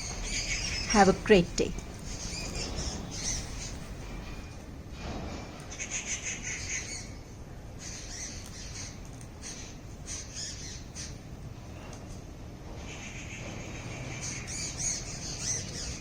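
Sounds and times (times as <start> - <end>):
birds calling: 0.0 - 4.4
low background rumble: 0.0 - 4.4.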